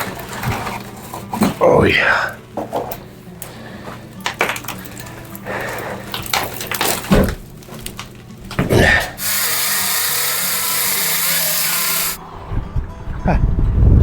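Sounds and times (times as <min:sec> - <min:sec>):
wood knocking and clattering: 0:06.2 - 0:08.8
power tool running: 0:09.2 - 0:12.2.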